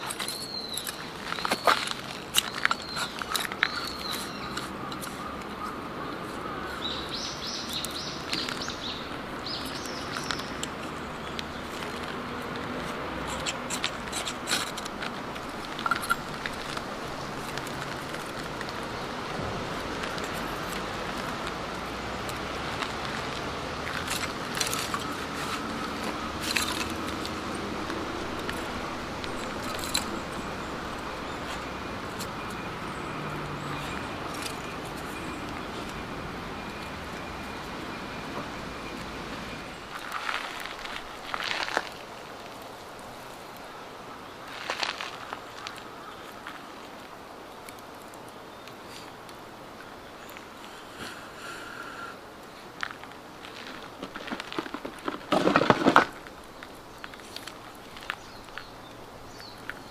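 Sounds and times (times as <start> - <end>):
birds chirping: 0.0 - 41.9, 56.3 - 59.9
outdoor background noise: 0.0 - 59.9.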